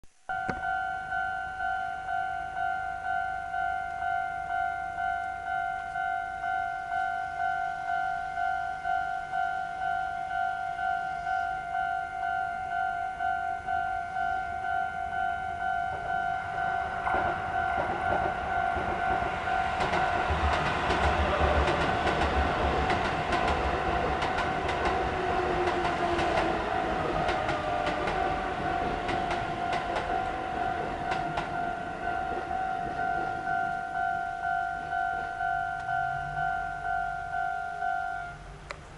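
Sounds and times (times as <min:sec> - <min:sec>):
level crossing alarm dinging: 0:00.2 - 0:38.5
electric train passing: 0:00.3 - 0:38.7
train wheels clattering over rail joints: 0:17.0 - 0:33.4.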